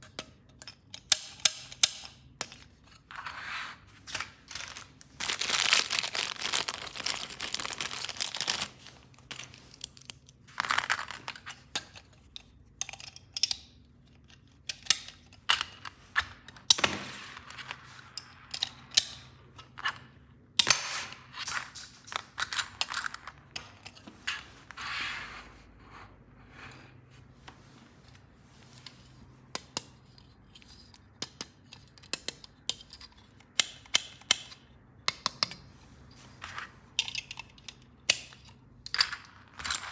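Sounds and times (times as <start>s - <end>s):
plastic packaging crinkling and tearing: 4.0s - 11.3s.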